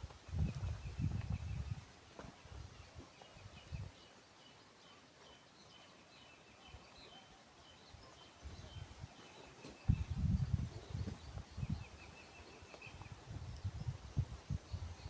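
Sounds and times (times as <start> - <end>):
birds chirping: 0.4 - 15.0.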